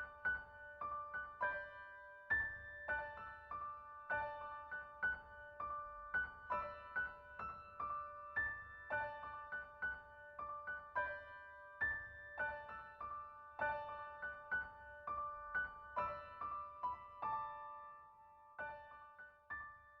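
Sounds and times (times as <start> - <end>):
gentle piano melody: 0.0 - 20.0.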